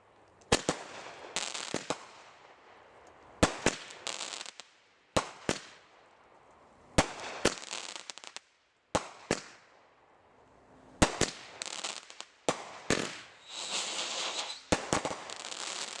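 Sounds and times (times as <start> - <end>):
fireworks bangs: 11.0 - 16.0
fireworks crackling: 11.0 - 16.0
hissing crackle: 13.4 - 16.0.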